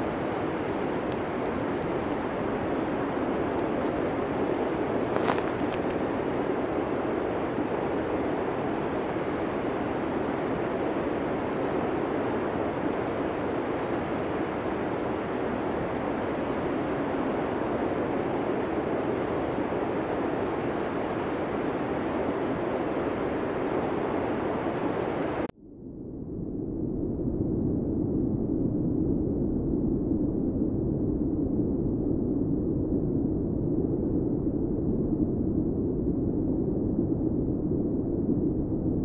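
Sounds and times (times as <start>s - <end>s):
blizzard wind roaring: 0.0s - 6.0s
sharp crackle: 0.0s - 6.0s.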